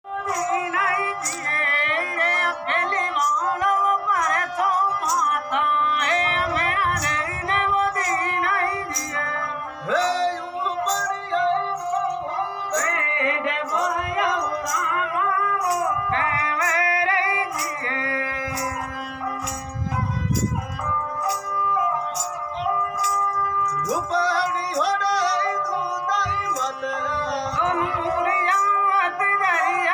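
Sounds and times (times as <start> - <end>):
high wavering singing voice: 0.0 - 21.5.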